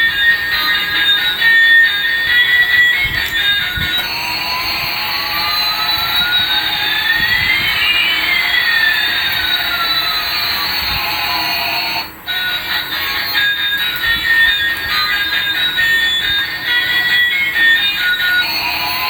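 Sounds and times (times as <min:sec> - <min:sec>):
whine gliding up: 0:00.0 - 0:18.7
whine gliding down: 0:02.1 - 0:11.3.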